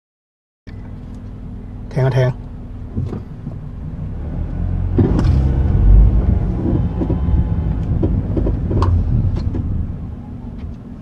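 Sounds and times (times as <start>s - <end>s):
car engine and road rumble: 0.7s - 11.0s
metal creaks and knocks: 5.0s - 9.8s.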